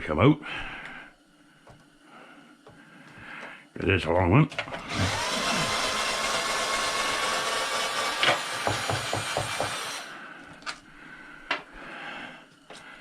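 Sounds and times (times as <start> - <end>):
power drill motor: 4.7 - 10.8
knocks: 8.2 - 9.8.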